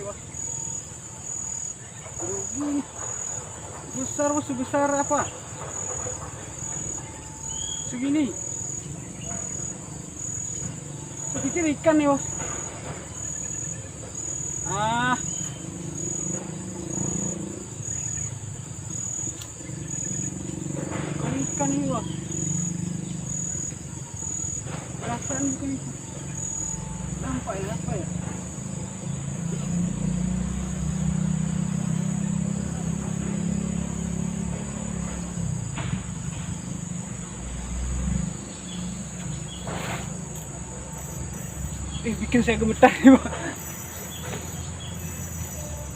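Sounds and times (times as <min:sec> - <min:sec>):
insects trilling: 0:00.0 - 0:45.9
brief hissing noises: 0:39.6 - 0:40.2.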